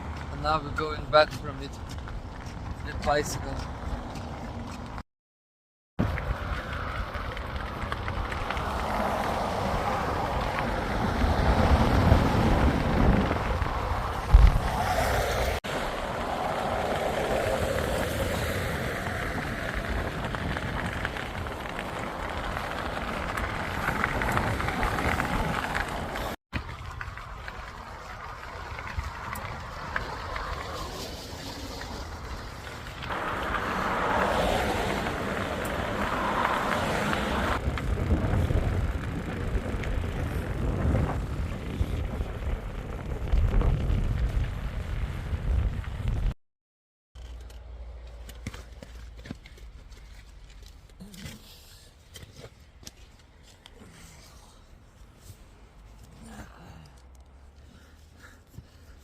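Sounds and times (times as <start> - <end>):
road traffic: 0.0 - 5.0, 6.0 - 43.3, 47.2 - 59.0
wind on microphone: 6.0 - 33.8, 34.6 - 46.4.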